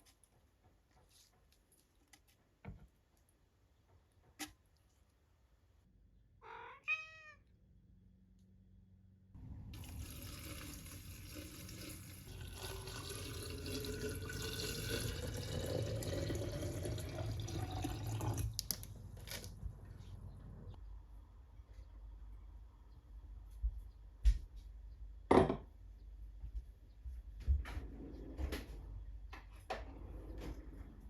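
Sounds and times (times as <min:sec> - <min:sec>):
tap water running into a pot: 0:09.8 - 0:18.7.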